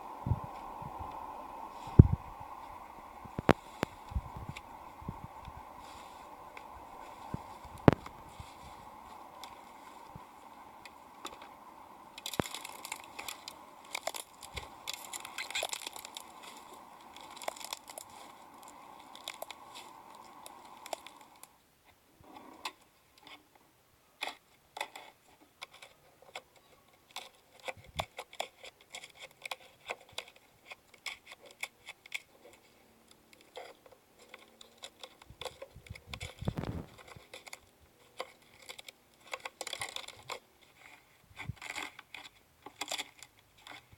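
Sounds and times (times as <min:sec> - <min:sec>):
steady background hum: 0:00.0 - 0:22.6, 0:32.6 - 0:43.9.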